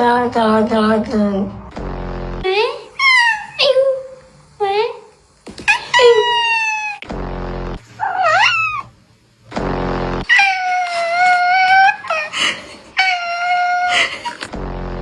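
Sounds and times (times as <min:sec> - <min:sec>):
short low buzzy sounds: 0:01.5 - 0:02.6, 0:07.0 - 0:08.0, 0:09.4 - 0:10.3, 0:14.5 - 0:15.0
cat meowing: 0:05.7 - 0:07.0, 0:08.0 - 0:08.9, 0:10.3 - 0:12.3, 0:13.0 - 0:14.0.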